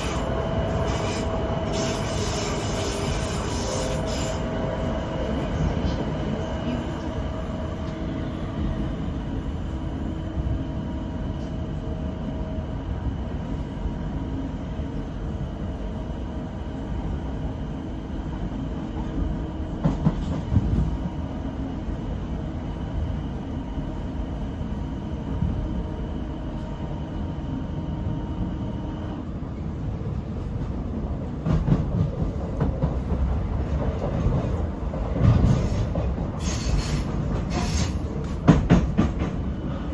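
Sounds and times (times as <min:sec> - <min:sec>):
train wheels rumbling on rail: 0:00.0 - 0:39.9
train knocks and rattles: 0:14.2 - 0:22.7, 0:29.4 - 0:39.9.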